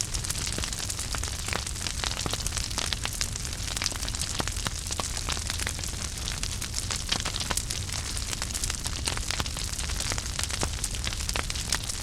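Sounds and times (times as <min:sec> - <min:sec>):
wood fire crackling: 0:00.0 - 0:12.0.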